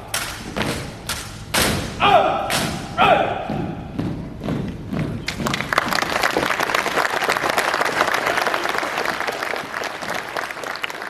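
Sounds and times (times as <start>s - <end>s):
audience applauding: 5.3s - 11.0s.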